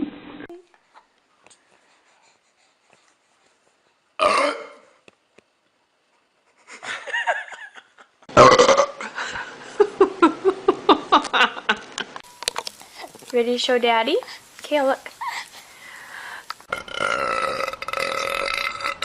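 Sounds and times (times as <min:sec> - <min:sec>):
person burping loudly: 0:04.2 - 0:04.9, 0:08.3 - 0:09.1, 0:16.7 - 0:19.0.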